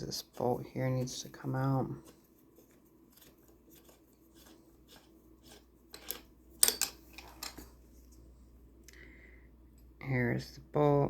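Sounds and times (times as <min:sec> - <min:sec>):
metal tool clicking on bolt: 0:05.9 - 0:07.6.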